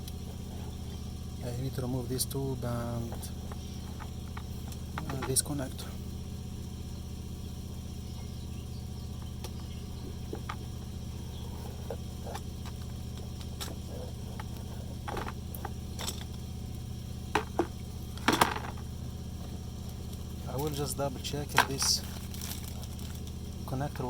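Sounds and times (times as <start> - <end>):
steady low hum: 0.0 - 24.0
sharp knocks: 3.2 - 5.4, 17.3 - 18.8
clicks and taps of parts handled: 3.5 - 5.4, 14.4 - 16.3, 17.4 - 18.8.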